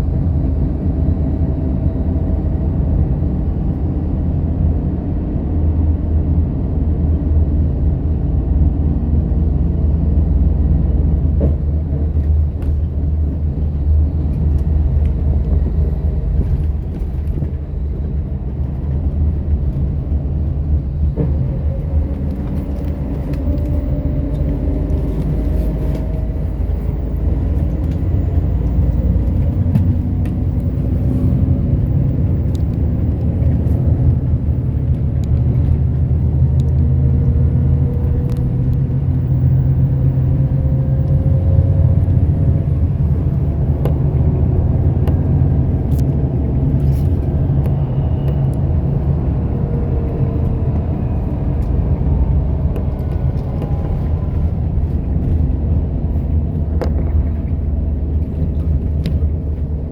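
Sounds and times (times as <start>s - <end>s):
bus engine rumble: 0.0s - 59.9s.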